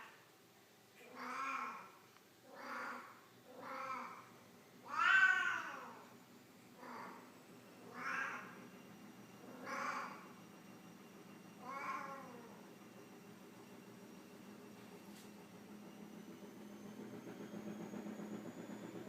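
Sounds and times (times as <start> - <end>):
cat meowing calls: 1.1 - 1.9, 2.5 - 6.0, 7.9 - 8.6.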